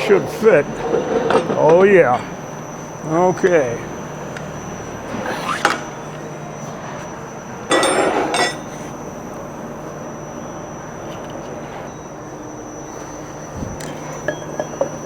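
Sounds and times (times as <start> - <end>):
steady shop hum: 0.0 - 15.0
steel parts knocking and clinking: 7.7 - 8.7.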